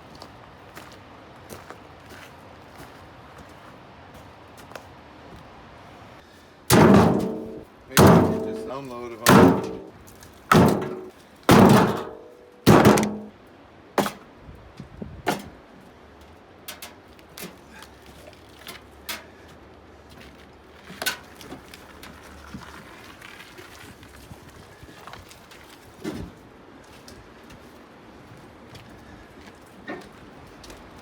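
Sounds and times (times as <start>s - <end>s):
firewood thunking: 6.7s - 13.3s, 14.0s - 14.2s
wood pieces knocking and clicking: 10.5s - 13.3s.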